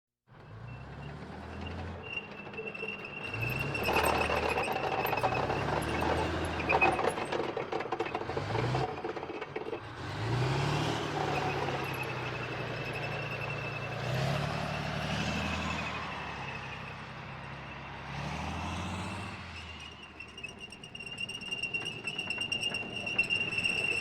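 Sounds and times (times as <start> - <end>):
tank engines revving: 0.3 - 24.0
high squeal: 0.6 - 8.2, 8.8 - 24.0
tracks clattering: 19.9 - 24.0.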